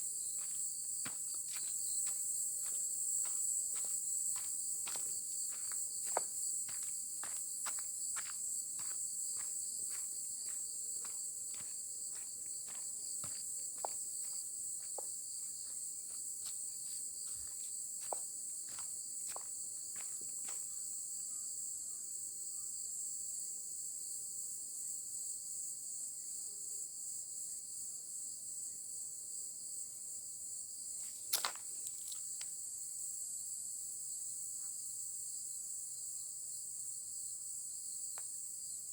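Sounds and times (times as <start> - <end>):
insects chorus: 0.0 - 38.9
footsteps crunching: 0.2 - 20.7, 31.2 - 32.0.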